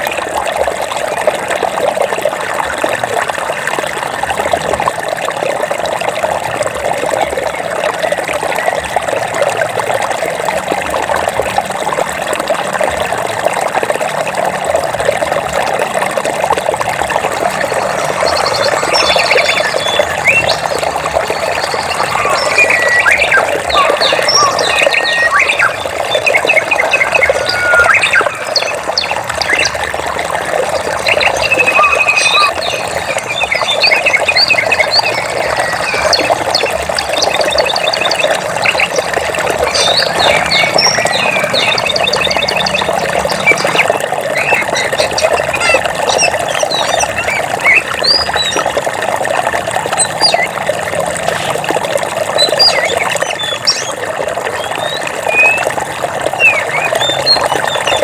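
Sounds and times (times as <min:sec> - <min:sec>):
running water: 0:00.0 - 0:58.0
birds chirping and trilling: 0:17.2 - 0:48.8, 0:50.0 - 0:50.6, 0:52.3 - 0:58.0.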